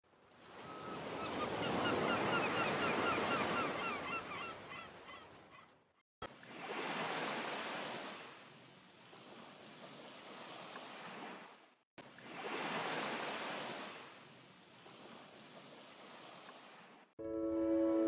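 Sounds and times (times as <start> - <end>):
birds chirping: 0.7 - 5.6.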